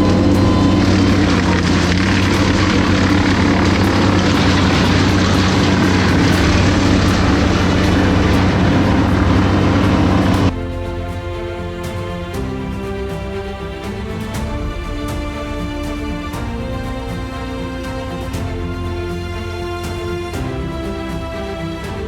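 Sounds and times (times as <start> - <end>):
motor running with hiss: 0.0 - 10.5.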